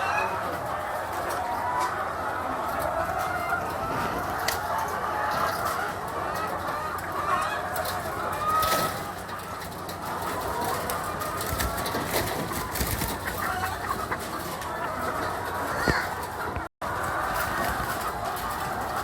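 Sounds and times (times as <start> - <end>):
flock of chickens clucking: 0.0 - 19.0.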